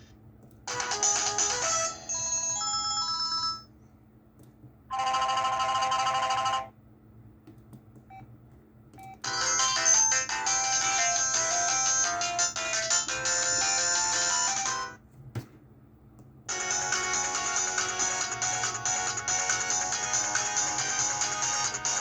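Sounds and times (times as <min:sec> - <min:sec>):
phone ringtone melody: 0:00.7 - 0:03.7, 0:04.9 - 0:06.7, 0:09.3 - 0:15.0.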